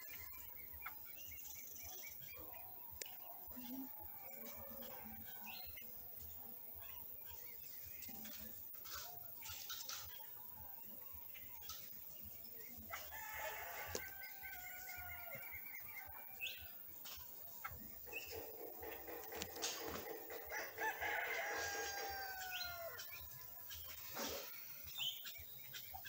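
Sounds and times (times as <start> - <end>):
rooster crowing: 13.0 - 15.6, 20.4 - 23.1.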